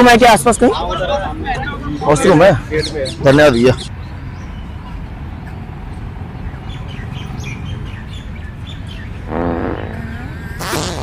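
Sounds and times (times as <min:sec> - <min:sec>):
birds chirping: 0:00.0 - 0:11.0
fart sound effect: 0:09.3 - 0:10.0, 0:10.6 - 0:11.0.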